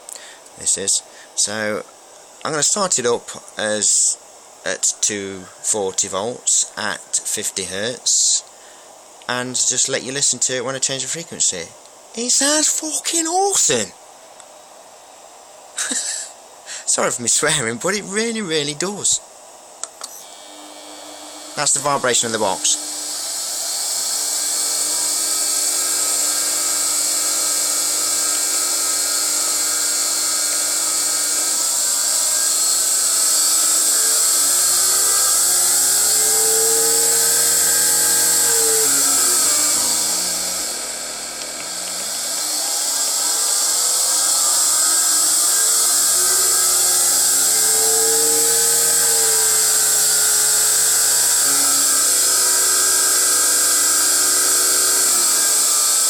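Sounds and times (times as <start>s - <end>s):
electric motor humming: 19.0s - 56.0s
high-pitched switching whine: 19.8s - 56.0s.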